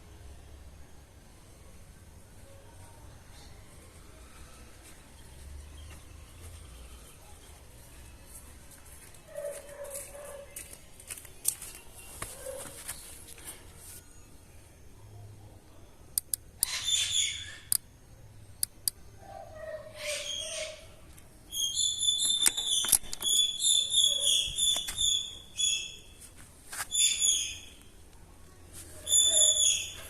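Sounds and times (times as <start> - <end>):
sharp clicks: 16.1 - 16.8, 18.6 - 19.0, 22.1 - 23.5
birds calling: 16.2 - 17.8, 18.6 - 26.2, 26.8 - 27.9, 29.0 - 30.0.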